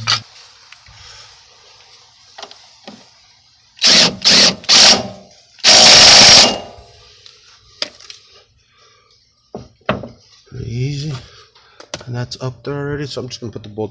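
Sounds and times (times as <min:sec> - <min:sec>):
power tool bursts: 0:03.8 - 0:06.9.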